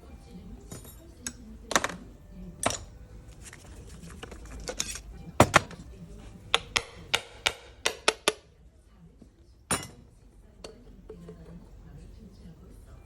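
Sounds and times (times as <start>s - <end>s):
metal parts clinking: 2.6s - 5.8s.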